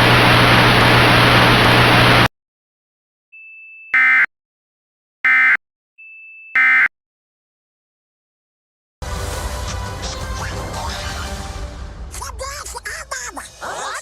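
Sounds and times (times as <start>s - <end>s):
low hum: 0.0s - 2.3s
electronic data bursts: 4.0s - 4.3s, 5.3s - 5.6s, 6.6s - 6.9s.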